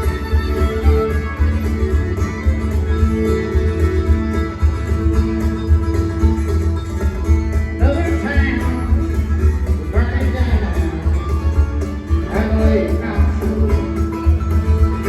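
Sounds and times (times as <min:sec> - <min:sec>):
acoustic guitar: 0:00.0 - 0:15.0
banjo picking: 0:00.0 - 0:15.0
steady bass: 0:00.0 - 0:15.0
person singing: 0:12.1 - 0:14.4.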